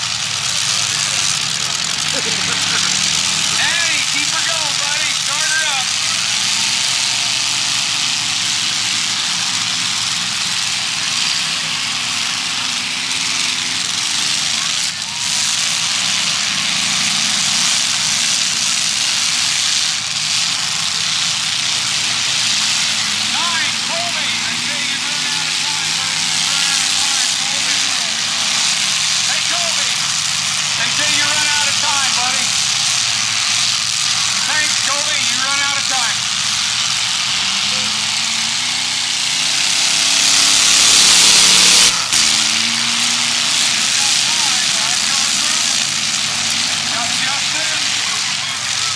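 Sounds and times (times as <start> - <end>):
car engines rumbling with hiss: 0.0 - 48.9
loud wash of noise: 39.8 - 42.7.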